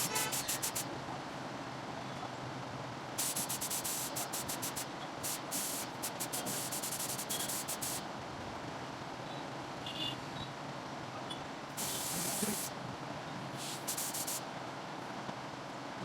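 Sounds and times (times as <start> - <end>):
pneumatic tool air bursts: 0.0 - 0.8, 3.2 - 8.0, 11.8 - 12.7, 13.6 - 14.4
low background noise: 0.0 - 16.0.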